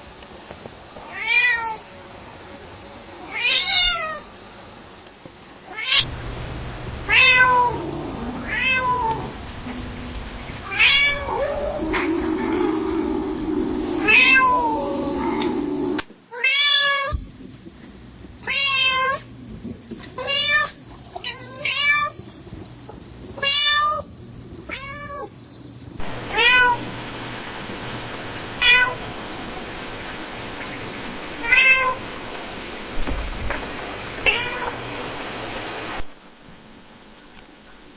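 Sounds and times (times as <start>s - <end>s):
cat meowing softly: 7.1s - 10.0s, 10.6s - 17.2s, 24.7s - 25.3s, 31.4s - 32.0s, 34.2s - 34.8s.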